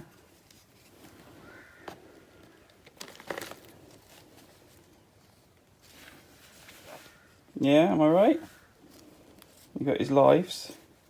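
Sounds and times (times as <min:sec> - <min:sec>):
handling cardboard and plastic pieces: 0:00.0 - 0:07.4.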